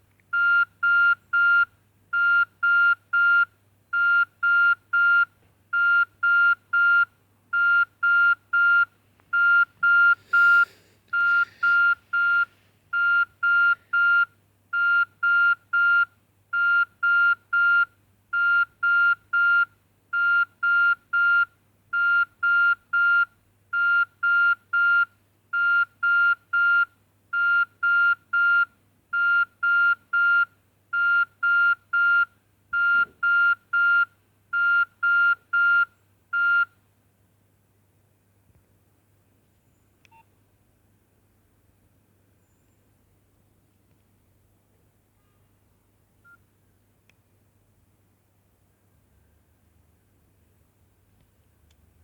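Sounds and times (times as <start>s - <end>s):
phone beeping ringtone: 9.4s - 14.2s.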